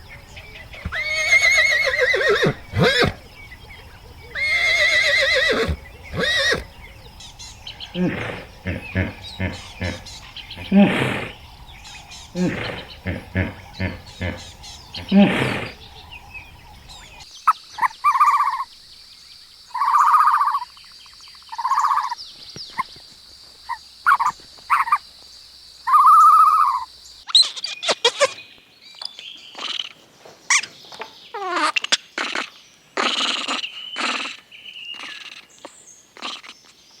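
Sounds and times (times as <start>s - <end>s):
farm animal calls: 0.0s - 18.6s.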